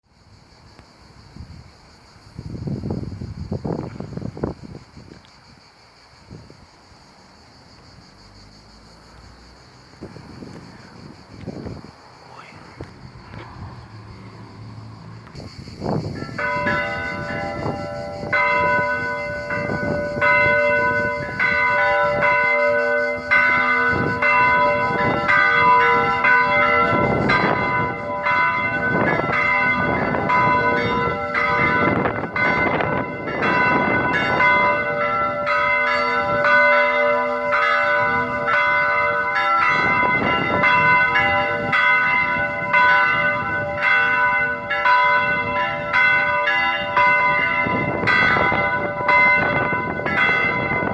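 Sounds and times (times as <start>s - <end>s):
church bells ringing: 16.2s - 50.9s.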